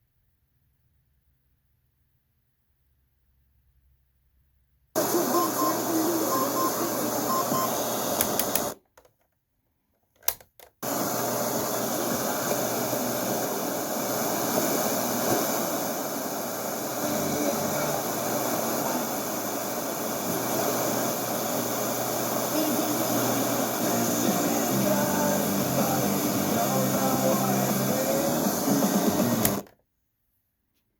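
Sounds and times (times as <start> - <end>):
radio static hiss: 5.0 - 8.8, 10.8 - 29.7
radio clicks: 7.1 - 9.1, 28.2 - 29.7.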